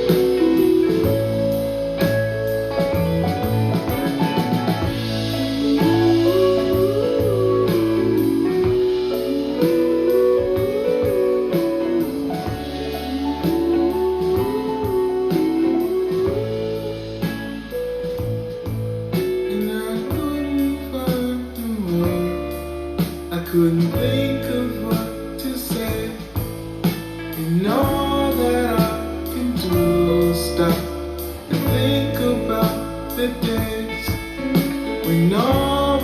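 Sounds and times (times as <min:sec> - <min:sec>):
bass line: 0:00.0 - 0:36.0
lead guitar melody: 0:00.0 - 0:36.0
steady drum beat: 0:00.0 - 0:36.0.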